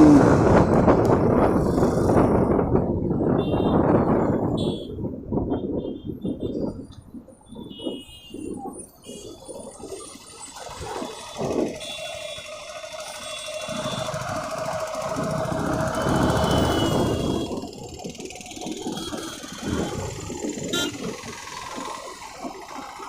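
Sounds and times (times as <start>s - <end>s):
motorcycle engine: 0.0s - 4.8s, 9.6s - 23.0s.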